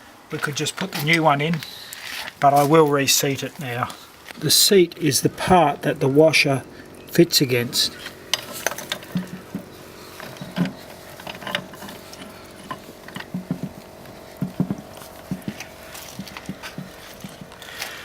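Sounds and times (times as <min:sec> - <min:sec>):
faint steady hum: 0:00.0 - 0:18.0
metal clicks and knocks: 0:08.0 - 0:13.8.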